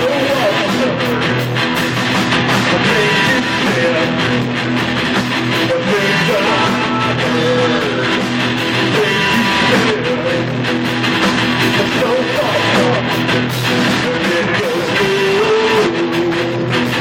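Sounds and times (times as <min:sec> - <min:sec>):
electric guitar: 0:00.0 - 0:17.0
live rock band: 0:00.0 - 0:17.0.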